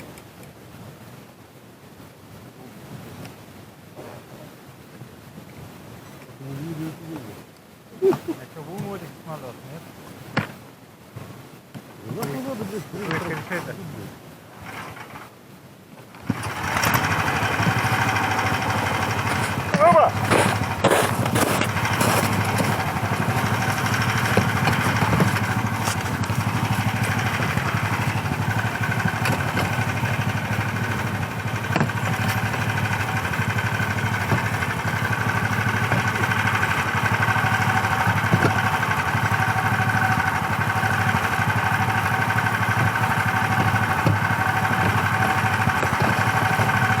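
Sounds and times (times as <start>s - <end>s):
vehicle engine running steadily: 16.2s - 47.0s.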